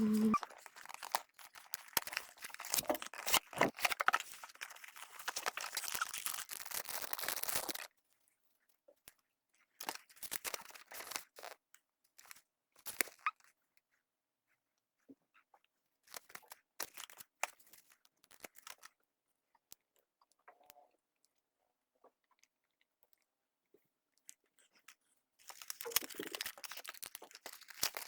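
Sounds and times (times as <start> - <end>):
packaging crinkling and tearing: 0.0 - 7.9, 9.8 - 11.6, 16.1 - 18.9, 25.4 - 28.0.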